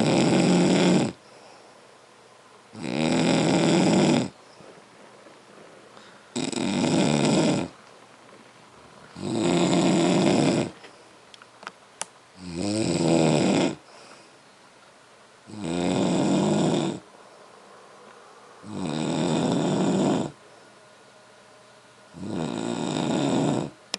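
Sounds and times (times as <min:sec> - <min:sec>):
loud snoring: 0:00.0 - 0:01.2, 0:02.7 - 0:04.4, 0:06.3 - 0:07.8, 0:09.1 - 0:10.8, 0:12.4 - 0:13.8, 0:15.5 - 0:17.0, 0:18.6 - 0:20.4, 0:22.1 - 0:23.8.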